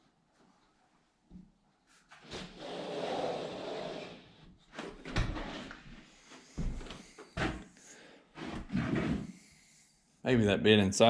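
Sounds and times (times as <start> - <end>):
scraping or sliding: 2.2 - 4.3, 8.4 - 9.4.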